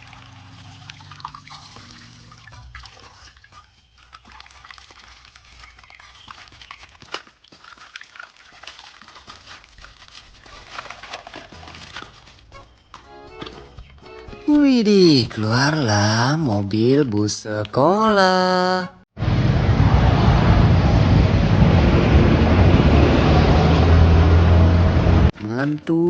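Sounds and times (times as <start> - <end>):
packaging rustling: 3.6 - 14.0.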